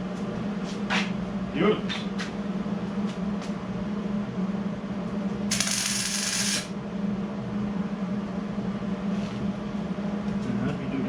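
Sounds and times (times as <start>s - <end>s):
steady low hum: 2.4s - 9.0s
welding crackling sizzle: 5.5s - 6.7s.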